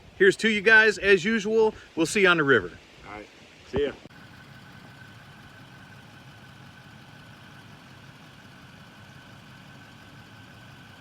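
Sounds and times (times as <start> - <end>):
engine idling with high whine: 4.1 - 11.0.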